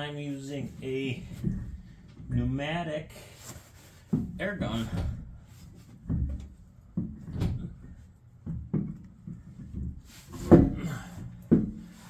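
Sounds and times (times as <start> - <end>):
irregular knocks and clunks: 1.2 - 2.6, 4.0 - 12.0.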